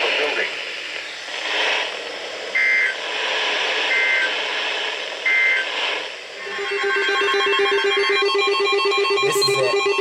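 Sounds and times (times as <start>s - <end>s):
radio hiss: 0.0s - 6.7s, 9.2s - 9.8s
two-tone digital data bursts: 6.4s - 10.0s.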